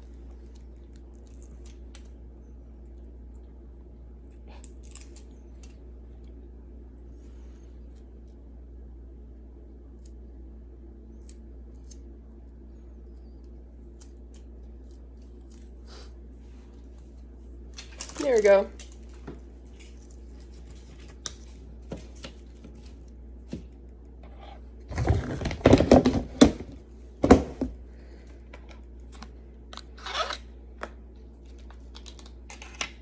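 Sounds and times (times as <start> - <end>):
low steady hum: 0.0 - 33.0
packaging crinkling and tearing: 4.5 - 5.8, 31.4 - 33.0.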